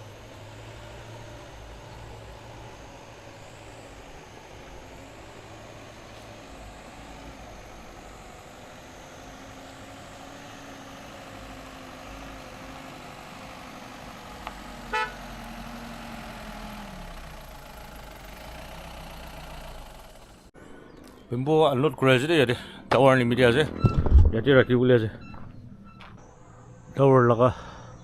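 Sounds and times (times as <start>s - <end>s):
vehicle engine hum: 0.0s - 28.0s
short horn toot: 14.9s - 15.2s.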